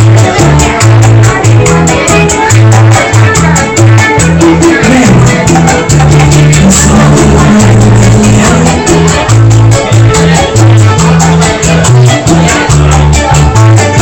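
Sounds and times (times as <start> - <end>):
loud dance music: 0.0 - 14.0.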